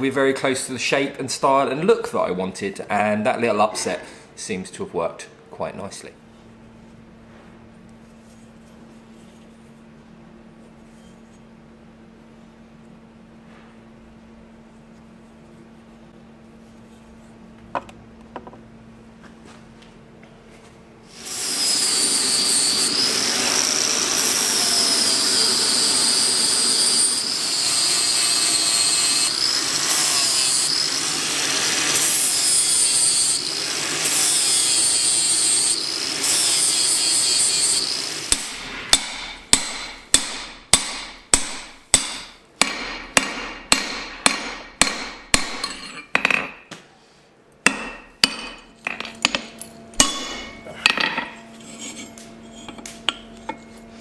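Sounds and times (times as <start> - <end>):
power grinder whining: 21.1 - 39.0
hammer striking metal on anvil: 38.3 - 46.7, 47.6 - 53.8.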